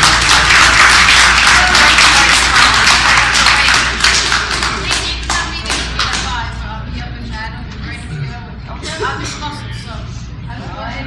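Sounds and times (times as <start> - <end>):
crowd applauding: 0.0 - 6.3.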